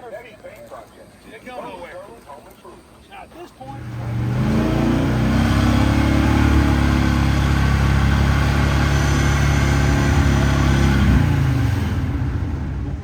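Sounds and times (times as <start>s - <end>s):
vehicle engine revving: 3.7s - 13.0s.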